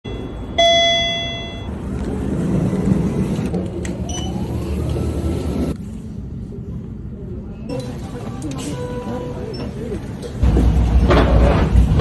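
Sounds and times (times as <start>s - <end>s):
vehicle rumble: 0.1s - 8.6s.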